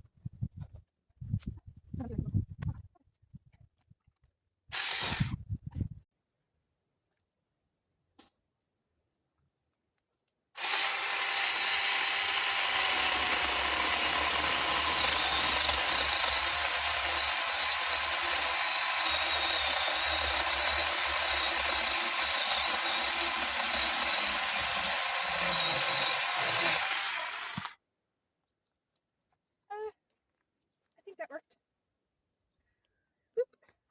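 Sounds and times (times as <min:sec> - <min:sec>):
power tool cutting wood: 0:04.7 - 0:05.3, 0:10.6 - 0:27.8.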